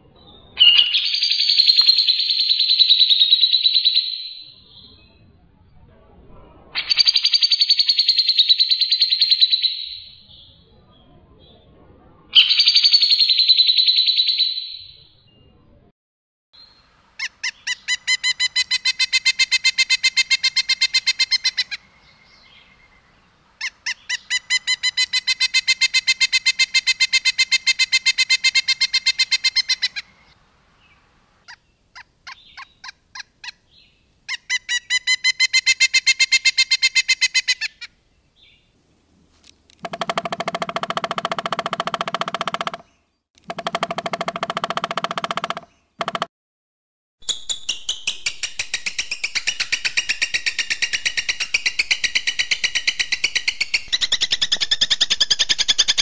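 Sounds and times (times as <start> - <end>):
songbird trills: 0.2 - 5.2, 16.6 - 38.7.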